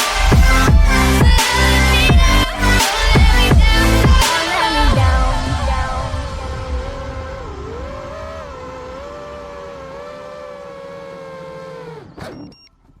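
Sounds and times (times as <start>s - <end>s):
quadcopter motors whining: 6.5s - 12.7s.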